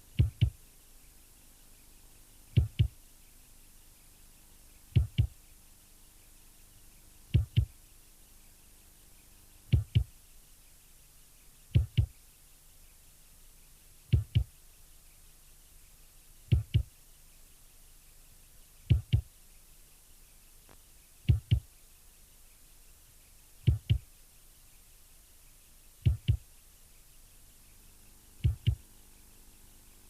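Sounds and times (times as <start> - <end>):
heartbeat double thumps: 0.2 - 0.6, 2.6 - 3.0, 5.0 - 5.4, 7.3 - 7.8, 9.7 - 10.1, 11.8 - 12.2, 14.1 - 14.5, 16.5 - 16.9, 18.9 - 19.3, 21.3 - 21.7, 23.6 - 24.1, 26.0 - 26.4, 28.4 - 28.8.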